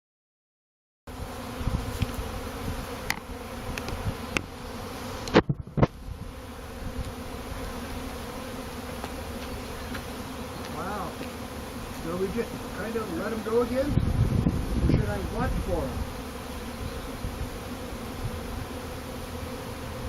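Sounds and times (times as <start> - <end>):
bees buzzing: 1.1 - 20.0.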